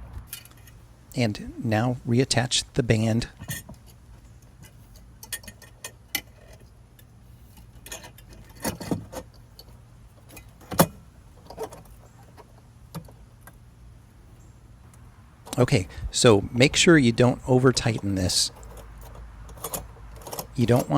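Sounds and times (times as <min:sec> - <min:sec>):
metallic clicks and clanks: 0:03.4 - 0:13.6, 0:17.6 - 0:20.9.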